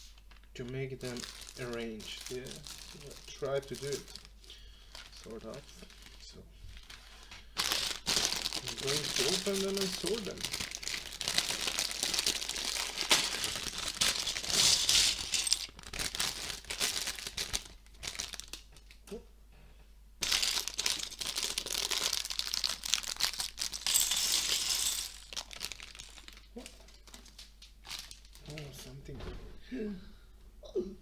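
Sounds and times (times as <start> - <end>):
plastic bags crinkling and tearing: 0.0 - 19.0, 20.2 - 28.8.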